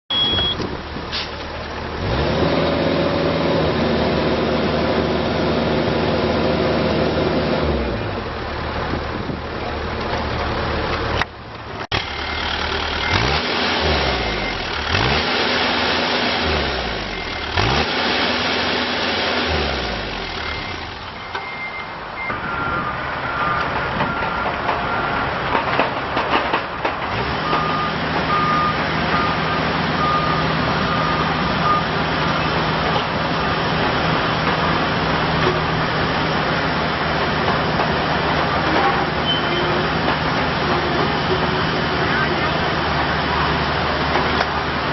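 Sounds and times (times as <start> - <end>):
warning alarm beeping: 0.1 - 0.6
excavator diesel engine revving: 0.1 - 44.9.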